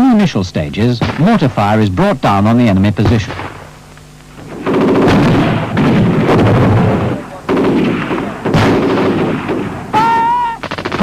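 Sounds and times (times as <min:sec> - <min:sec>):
sharp crack: 0:03.0 - 0:11.0
mortar bombs exploding: 0:04.4 - 0:11.0.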